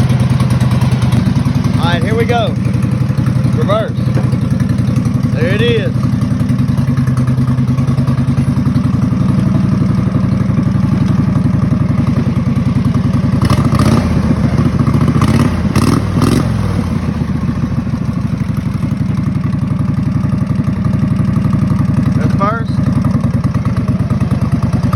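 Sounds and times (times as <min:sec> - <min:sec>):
lawn mower engine running: 0:00.0 - 0:24.9
clattering knocks: 0:04.1 - 0:04.7.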